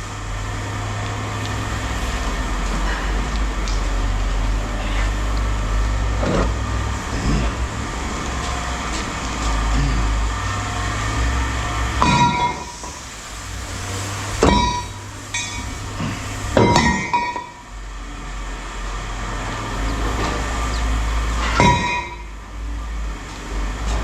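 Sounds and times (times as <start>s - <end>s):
scrap metal clanking: 11.9s - 17.6s, 19.4s - 22.4s.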